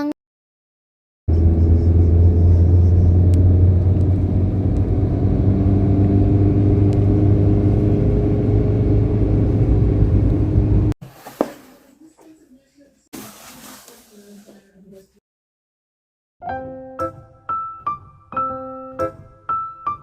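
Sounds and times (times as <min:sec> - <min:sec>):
vehicle engine and road rumble: 0:01.3 - 0:11.0.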